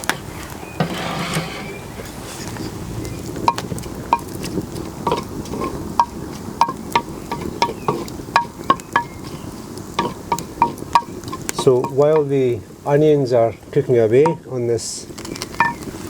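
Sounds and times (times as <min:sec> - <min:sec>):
onions frying in a pot: 0:00.0 - 0:16.0
spoon knocking against pot: 0:06.0 - 0:09.3, 0:10.0 - 0:12.3, 0:14.2 - 0:14.5, 0:15.6 - 0:15.8.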